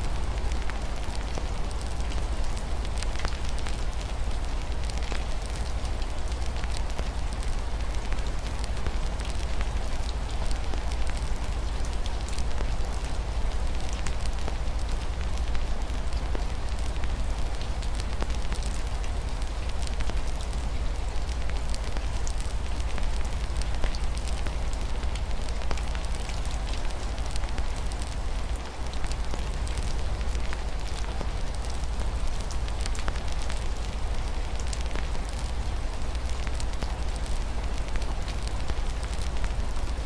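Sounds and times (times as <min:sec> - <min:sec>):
wood fire crackling and popping: 0:21.2 - 0:35.6, 0:36.2 - 0:39.9.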